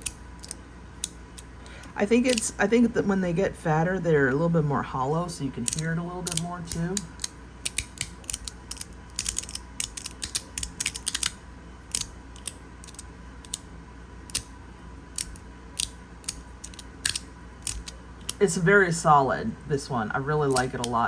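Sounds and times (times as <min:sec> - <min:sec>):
magnetic fidget slider clicking: 0:05.7 - 0:13.6, 0:15.2 - 0:18.4.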